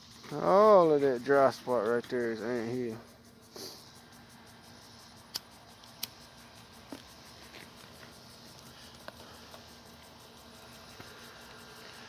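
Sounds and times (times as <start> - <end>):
sharp clicks: 5.2 - 6.3.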